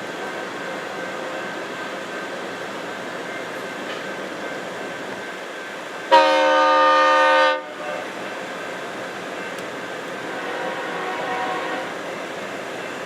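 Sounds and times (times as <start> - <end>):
rolling train noise: 0.0 - 13.0
locomotive air horn blast: 6.1 - 8.0, 10.3 - 12.0.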